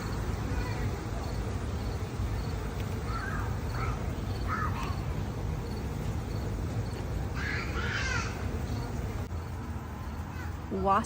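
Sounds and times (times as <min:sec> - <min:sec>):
bird calling: 0:02.4 - 0:09.0.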